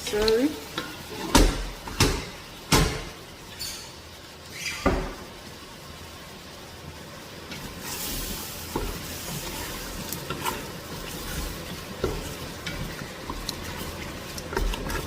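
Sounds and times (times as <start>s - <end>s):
meat and vegetables sizzling in pan: 0.0s - 15.0s
utensil scraping against pan: 7.5s - 15.0s.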